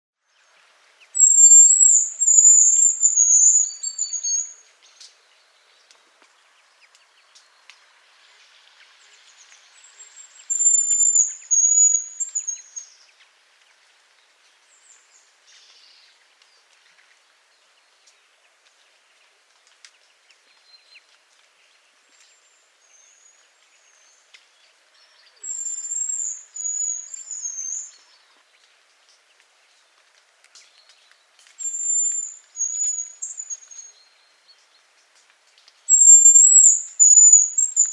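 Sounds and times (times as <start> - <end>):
grouse high thin whistling: 1.2 - 4.6, 35.9 - 37.9.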